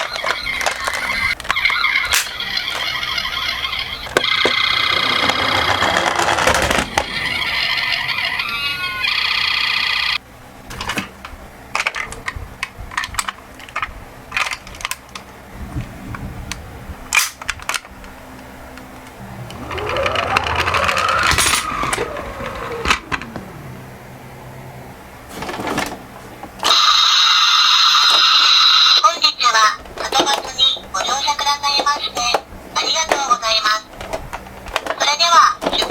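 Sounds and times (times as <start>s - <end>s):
toy ambulance siren: 0.0s - 10.2s, 19.4s - 23.8s, 26.6s - 29.0s
toy cars rolling and clicking: 0.0s - 10.2s, 11.8s - 15.3s, 19.4s - 23.5s, 26.6s - 35.9s
rising and falling siren wail: 19.2s - 25.2s.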